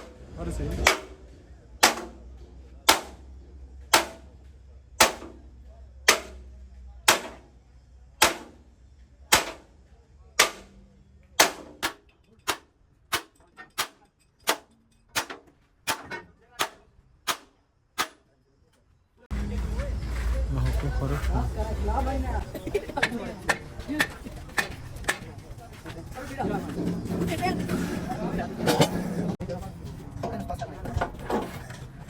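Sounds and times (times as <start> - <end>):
hammer striking metal: 0.7 - 4.4, 5.0 - 6.5, 7.1 - 7.5, 8.2 - 8.6, 9.3 - 9.7, 10.4 - 10.8, 11.4 - 18.2, 23.0 - 25.3.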